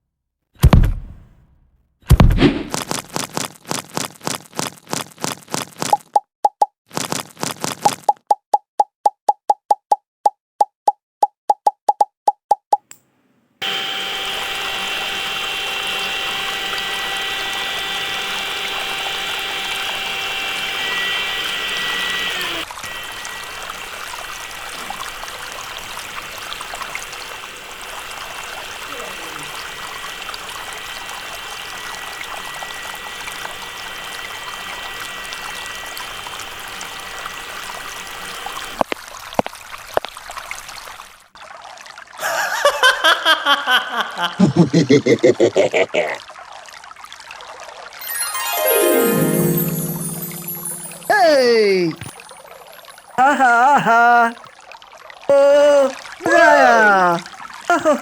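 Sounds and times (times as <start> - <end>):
water pouring and trickling: 6.9 - 8.2, 14.3 - 43.0, 45.5 - 58.0.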